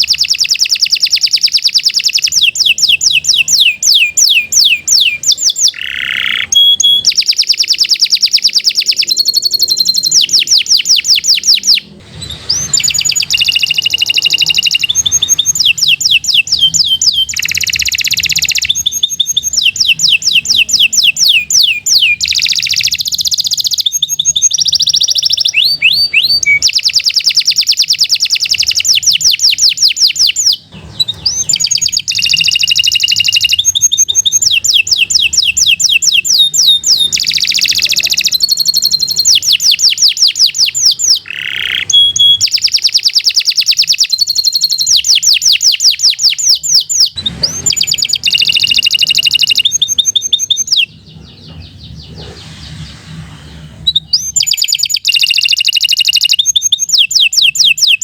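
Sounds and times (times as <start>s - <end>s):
canary singing trills: 0.0s - 58.0s.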